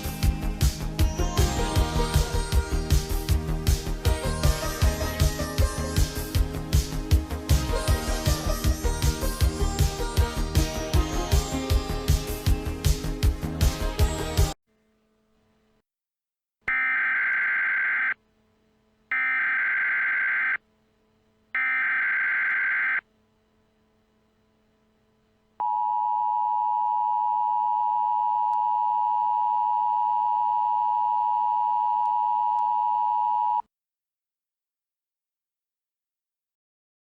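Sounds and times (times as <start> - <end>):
screeching digital data bursts: 16.7 - 18.2, 19.2 - 20.6, 21.6 - 23.0.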